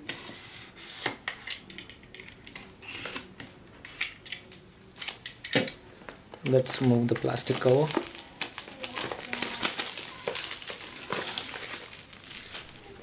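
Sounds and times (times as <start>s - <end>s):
plastic wrap crinkling: 6.4s - 13.0s.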